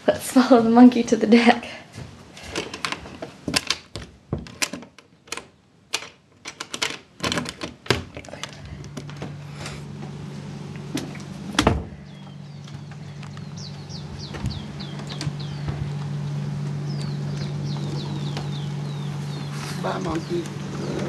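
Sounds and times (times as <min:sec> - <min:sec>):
footsteps: 0:01.9 - 0:03.4, 0:12.2 - 0:18.5
steady low hum: 0:07.8 - 0:21.0
door opening: 0:10.9 - 0:18.7
loud thump: 0:11.6 - 0:12.0
bird chirping: 0:12.0 - 0:21.0.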